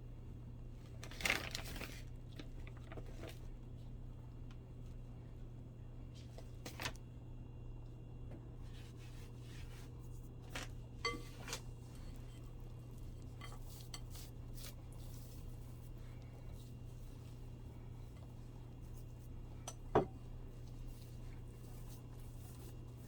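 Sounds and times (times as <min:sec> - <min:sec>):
steady low hum: 0:03.3 - 0:23.0
kitchen utensils and dishes clinking: 0:11.0 - 0:12.4.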